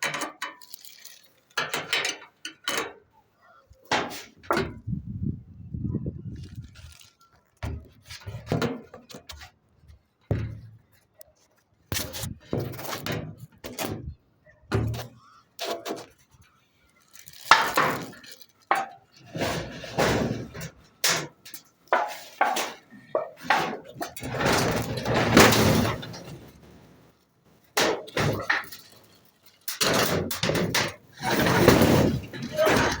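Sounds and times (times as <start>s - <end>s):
metal parts clanking: 0.0s - 3.1s, 17.0s - 33.0s.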